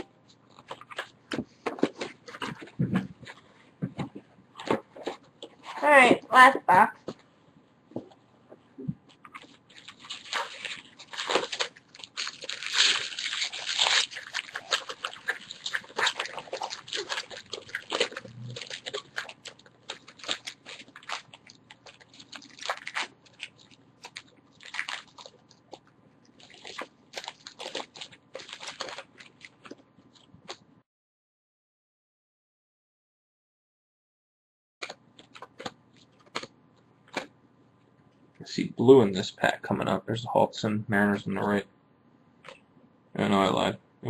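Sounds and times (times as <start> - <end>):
plastic wrapping crinkling and tearing: 9.2 - 30.6, 34.8 - 36.5.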